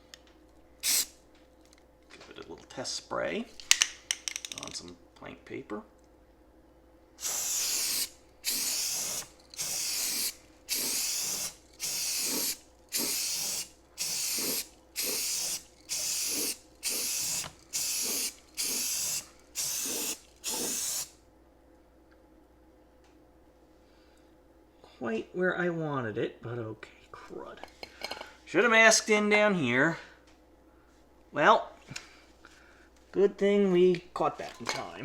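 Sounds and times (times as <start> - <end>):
aerosol can spraying: 0.8 - 1.1, 7.2 - 21.1.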